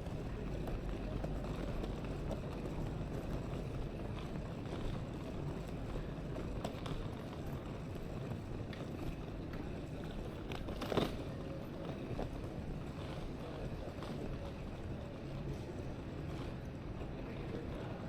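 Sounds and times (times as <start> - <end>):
low rumble and hiss: 0.0 - 11.8.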